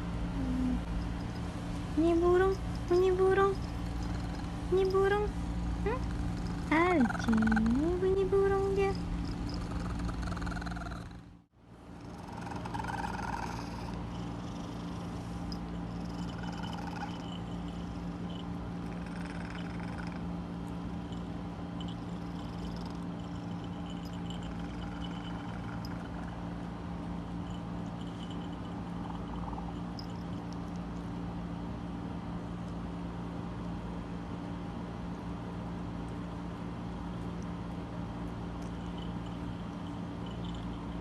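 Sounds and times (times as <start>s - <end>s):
cat purring: 0.4s - 11.4s, 12.0s - 20.3s, 21.8s - 26.6s, 27.2s - 30.6s.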